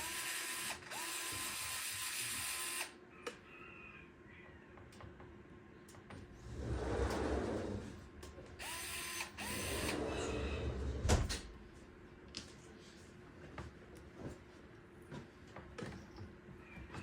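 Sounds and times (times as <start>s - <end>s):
electric screwdriver whirring: 0.0s - 3.0s, 8.6s - 10.0s.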